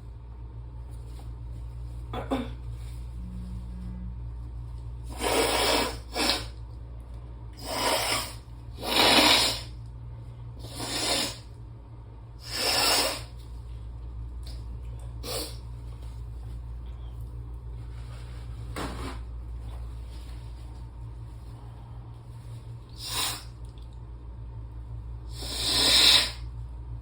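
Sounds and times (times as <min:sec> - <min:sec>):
person blowing nose: 0:05.1 - 0:06.6, 0:07.6 - 0:09.8, 0:10.6 - 0:11.5, 0:12.4 - 0:13.4, 0:15.2 - 0:15.6, 0:22.9 - 0:23.5, 0:25.3 - 0:26.5.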